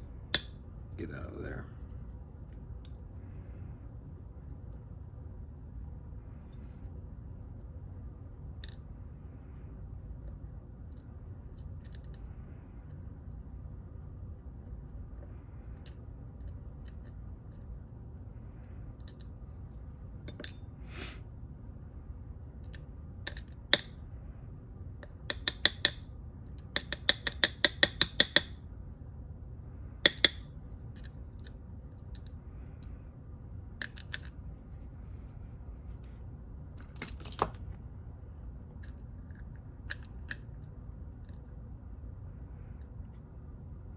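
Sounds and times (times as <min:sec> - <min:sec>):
metal lock parts clicking: 0:36.8 - 0:37.8.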